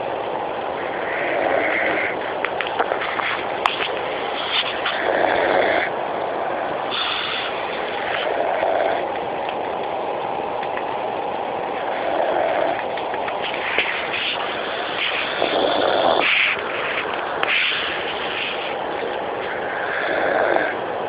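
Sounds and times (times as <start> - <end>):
dog snoring: 0.8 - 2.3, 2.9 - 5.9, 6.9 - 9.1, 11.8 - 20.8.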